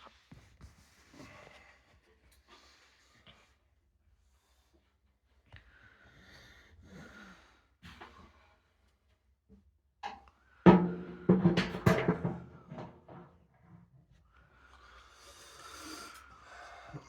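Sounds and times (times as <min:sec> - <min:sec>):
metal barrel knocking and clanking: 0:10.7 - 0:13.4.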